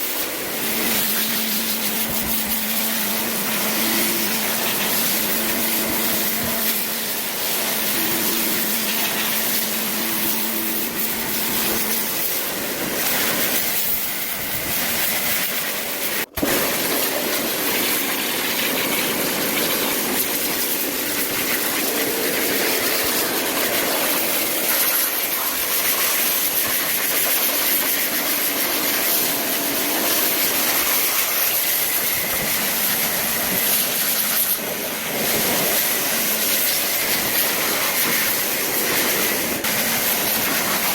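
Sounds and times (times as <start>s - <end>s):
high-pressure water spray hissing: 0.0s - 40.9s.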